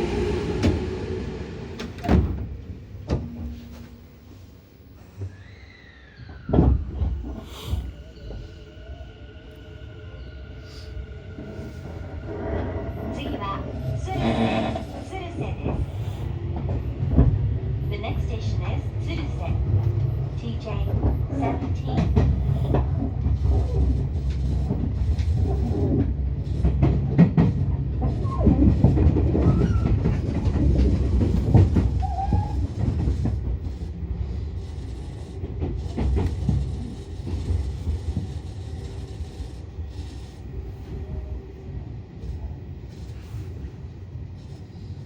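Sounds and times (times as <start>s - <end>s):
electric train rumbling on rails: 0.0s - 45.0s
wheel squeals: 28.2s - 30.4s, 32.0s - 33.1s.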